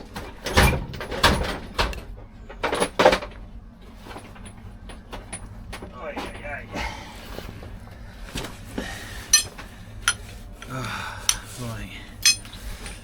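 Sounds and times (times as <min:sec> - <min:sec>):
metallic knocks and clanks: 0:09.3 - 0:10.3, 0:12.2 - 0:13.0
handling noise: 0:12.2 - 0:13.0.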